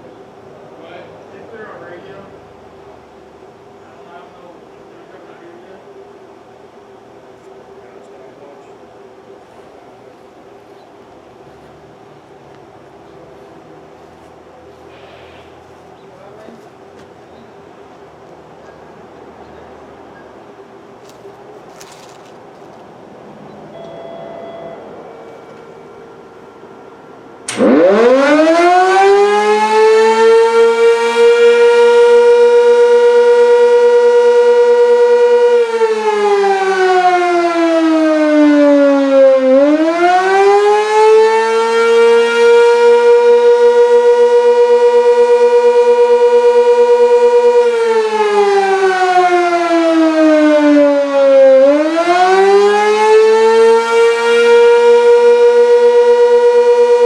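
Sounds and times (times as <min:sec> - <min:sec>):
warning siren winding: 0:27.4 - 0:57.0.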